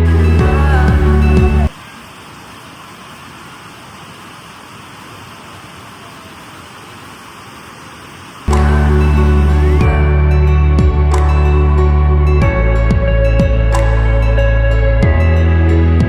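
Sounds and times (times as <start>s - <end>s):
music: 0.0s - 1.7s, 8.5s - 16.0s
water hissing: 0.0s - 9.8s.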